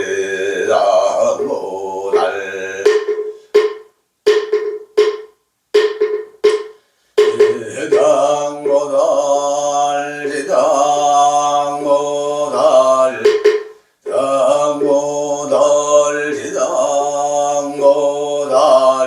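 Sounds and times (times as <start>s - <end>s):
man chanting: 0.0s - 3.1s, 7.3s - 13.4s, 14.1s - 19.0s
wooden fish knocks: 2.9s - 8.8s, 13.2s - 13.8s.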